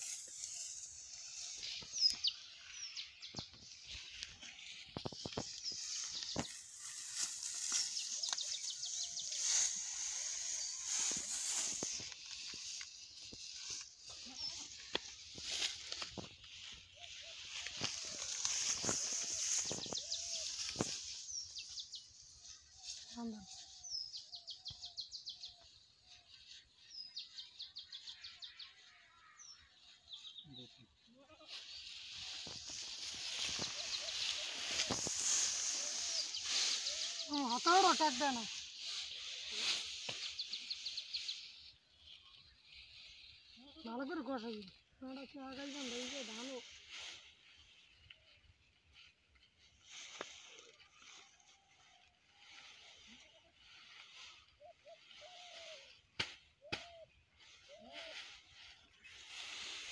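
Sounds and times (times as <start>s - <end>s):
songbird singing: 0.0s - 46.6s, 50.2s - 59.9s
birds chirping: 0.1s - 31.0s, 31.6s - 45.6s.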